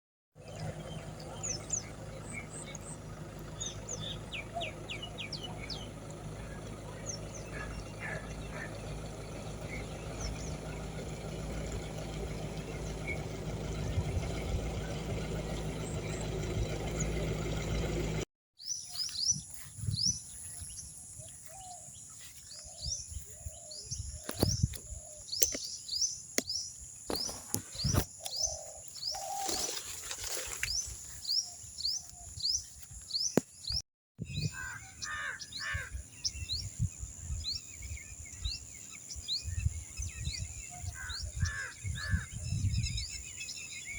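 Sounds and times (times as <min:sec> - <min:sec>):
lower bird calls: 0:00.4 - 0:18.0, 0:18.6 - 0:43.9
low rumbling noise: 0:00.4 - 0:18.2
quick bird chirps: 0:18.6 - 0:36.8.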